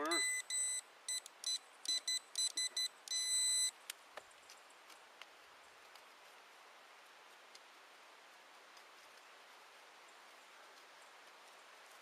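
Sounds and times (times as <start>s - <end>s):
pinpointer beeping: 0.0s - 3.8s.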